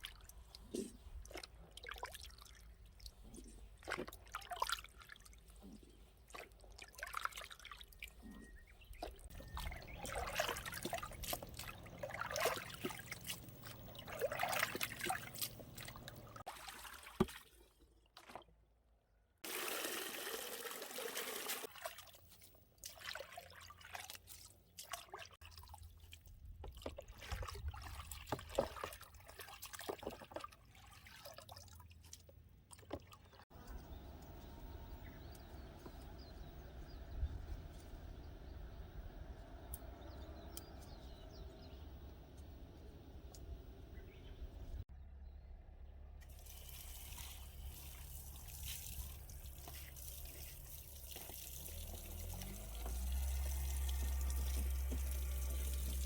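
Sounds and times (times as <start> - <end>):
small splashes: 0.0 - 18.6, 19.4 - 33.8, 46.2 - 56.0
water trickling and dripping: 6.3 - 17.4, 46.2 - 56.0.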